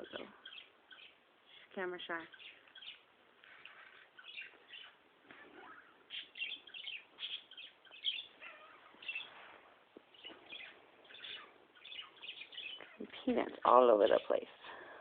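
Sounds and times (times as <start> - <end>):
small birds chirping: 0.0 - 14.8.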